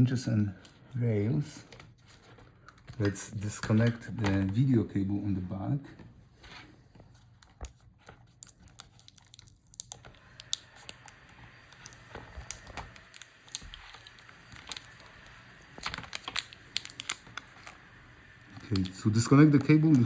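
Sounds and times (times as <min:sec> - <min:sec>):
plastic crinkling: 0:06.8 - 0:20.0.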